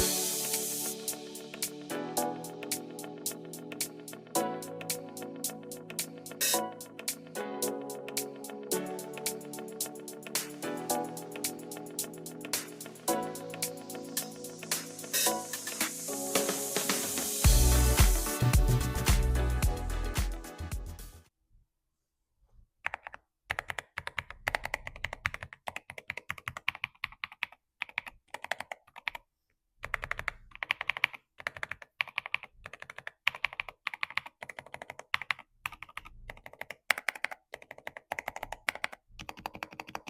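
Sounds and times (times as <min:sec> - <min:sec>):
fast typing on mechanical keyboard: 0:22.9 - 0:40.0.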